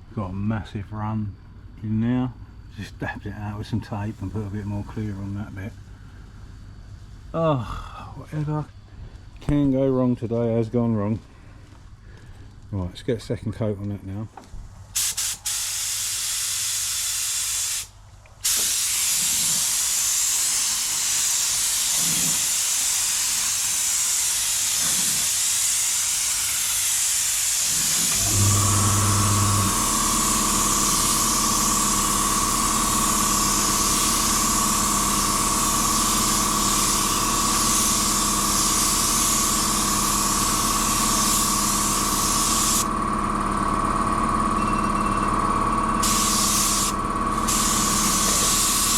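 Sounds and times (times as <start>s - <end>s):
paint spray gun hissing: 15.0s - 42.9s, 46.0s - 48.9s
machine humming and whining: 27.6s - 48.9s.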